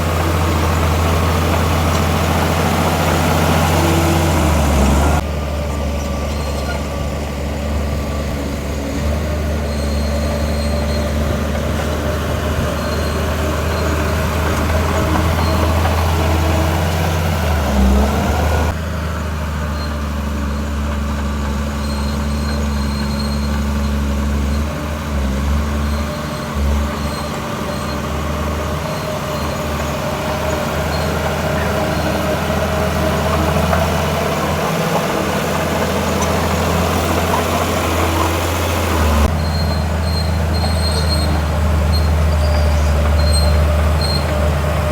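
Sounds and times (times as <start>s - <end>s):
heavy diesel engines running: 0.0s - 44.9s.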